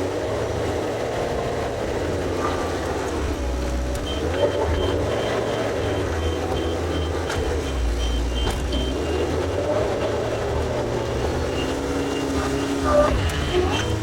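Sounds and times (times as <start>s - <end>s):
backhoe engine and hydraulics: 0.0s - 14.0s
reversing alarm beeping: 4.0s - 9.8s.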